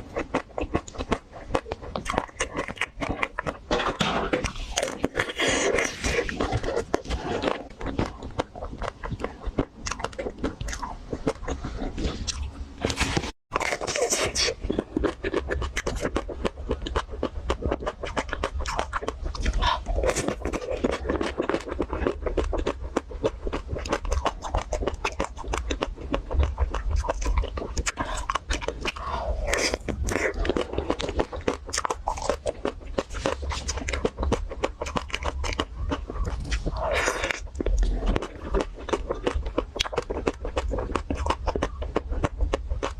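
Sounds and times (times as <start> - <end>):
ice cream shell crunching: 0.0 - 42.9
wet mouth sounds: 0.0 - 42.9.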